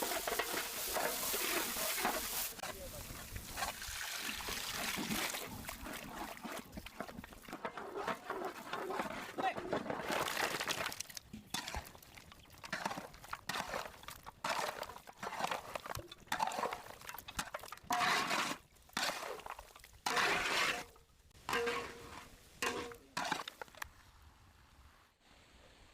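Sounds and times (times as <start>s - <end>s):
kitchenware clinking and scraping: 0.0s - 2.8s, 21.5s - 23.7s.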